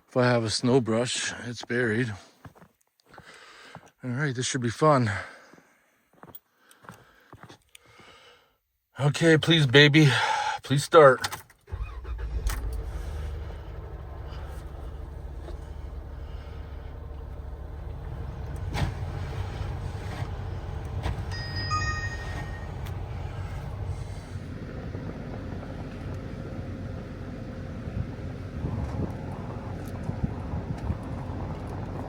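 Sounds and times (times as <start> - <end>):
car engine starting and idling: 11.7 - 32.0
electronic dashboard chime: 21.3 - 23.1.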